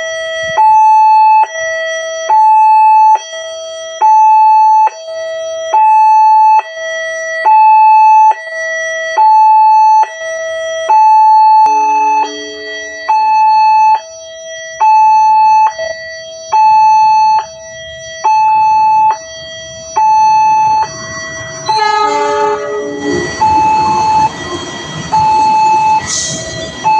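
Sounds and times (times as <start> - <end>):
two-tone level crossing siren: 0.0 - 26.9
low rumble: 20.2 - 26.9.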